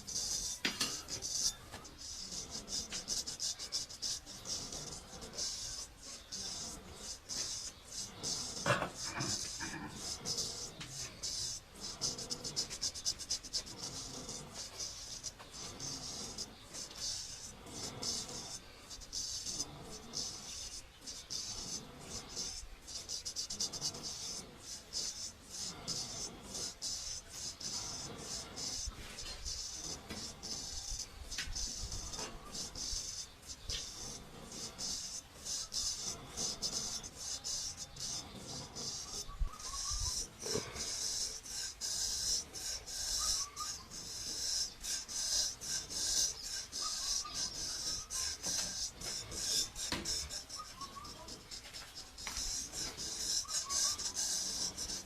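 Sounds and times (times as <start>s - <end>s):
razor scraping over stubble: 0.0s - 55.0s.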